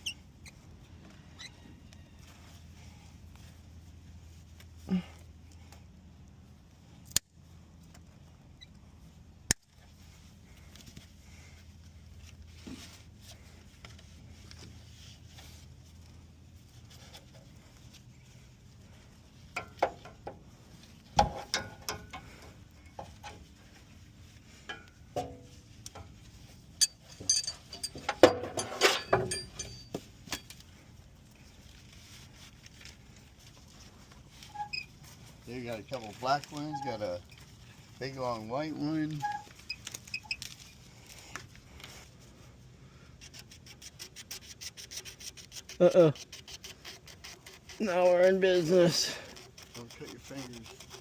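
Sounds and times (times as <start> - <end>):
clattering and rustling: 24.5 - 30.8.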